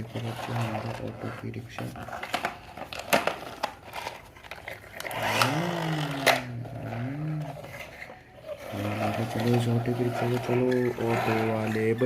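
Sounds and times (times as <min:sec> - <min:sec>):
toy motor whirring hum: 0:02.8 - 0:12.0.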